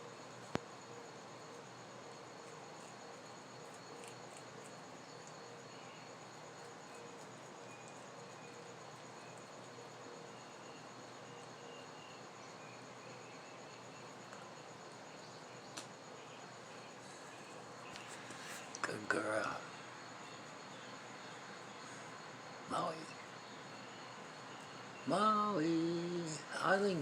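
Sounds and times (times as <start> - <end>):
crickets chirping: 0.0 - 27.0
faint clicks: 15.7 - 15.9.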